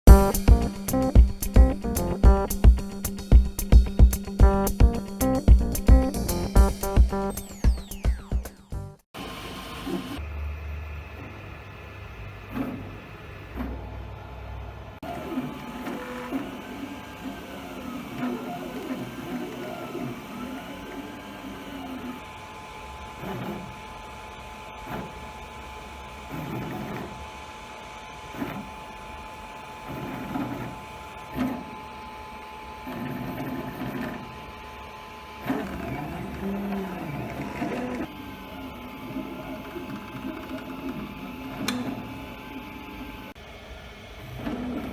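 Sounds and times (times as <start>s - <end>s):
steady hum: 0.1s - 9.0s.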